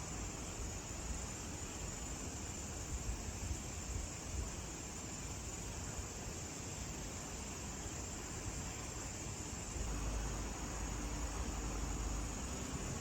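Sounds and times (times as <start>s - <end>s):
even hiss: 0.0s - 13.0s
low unsteady rumble: 9.8s - 13.0s.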